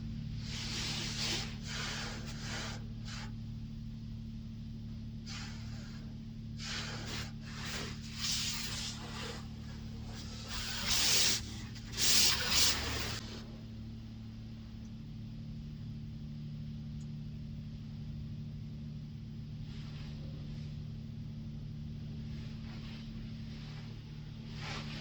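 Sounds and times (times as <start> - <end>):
low equipment hum: 0.0 - 25.0
spray wand hissing: 6.6 - 13.2.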